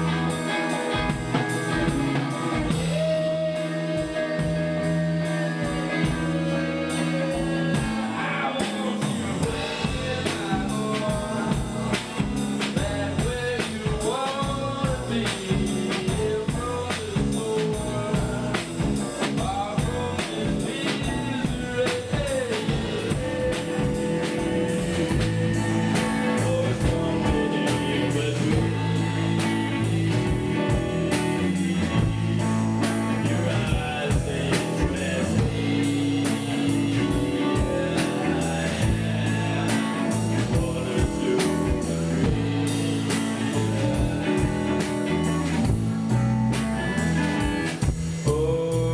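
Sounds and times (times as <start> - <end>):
person singing: 0.0 - 46.0, 47.2 - 48.9
drum kit beat: 0.0 - 48.9
guitar: 0.0 - 48.9.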